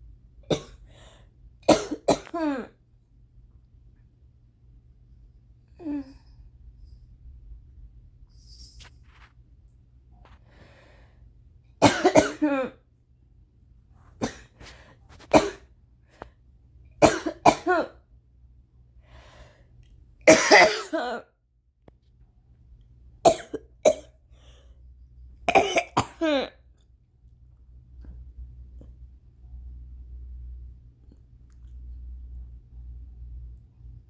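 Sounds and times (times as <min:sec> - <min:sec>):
woman coughing: 0:00.5 - 0:00.8, 0:01.7 - 0:02.8, 0:11.8 - 0:12.8, 0:15.4 - 0:15.6, 0:17.0 - 0:18.0, 0:20.3 - 0:21.3, 0:23.3 - 0:24.1, 0:25.5 - 0:26.6.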